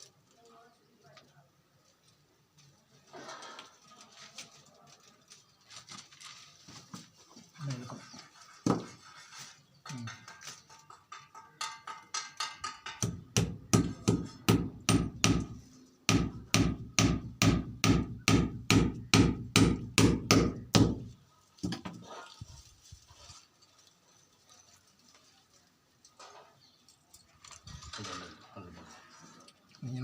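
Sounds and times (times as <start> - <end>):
hammer driving nails: 11.6 - 21.1.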